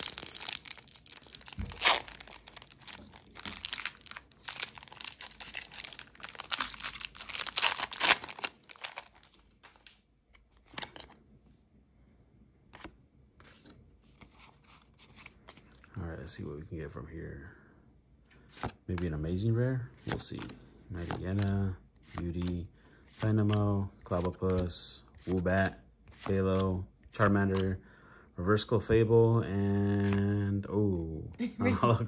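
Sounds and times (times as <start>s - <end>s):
foil wrapper tearing and crinkling: 0.0s - 9.9s.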